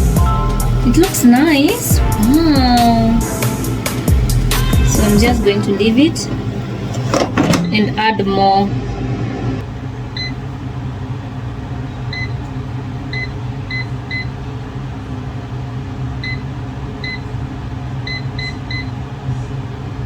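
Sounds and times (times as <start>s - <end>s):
appliance fan humming: 0.0s - 20.0s.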